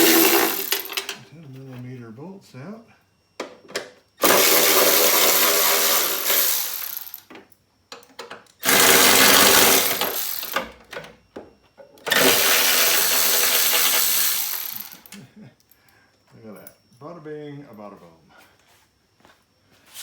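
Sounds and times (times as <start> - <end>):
power driver running bolts: 0.0 - 1.2, 3.8 - 7.4, 8.6 - 11.0, 12.0 - 15.2.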